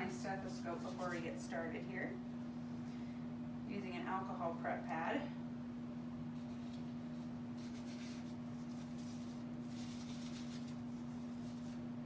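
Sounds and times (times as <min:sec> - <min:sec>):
steady low hum: 0:00.0 - 0:12.0
pad rubbing a stethoscope: 0:00.6 - 0:01.4, 0:06.4 - 0:11.9.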